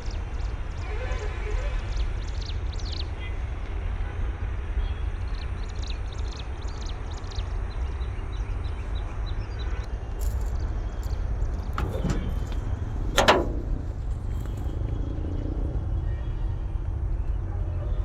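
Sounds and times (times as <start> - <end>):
diesel engine rumbling: 10.2 - 18.0.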